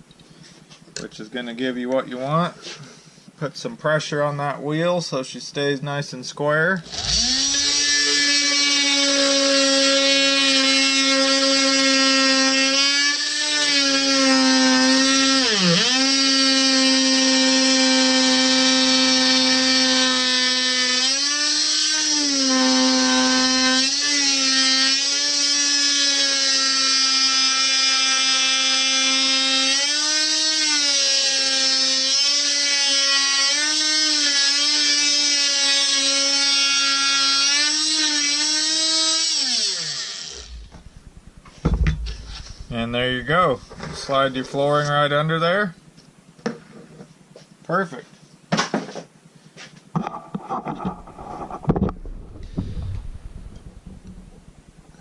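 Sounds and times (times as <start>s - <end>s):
oscillating multi-tool buzzing: 6.8s - 43.3s.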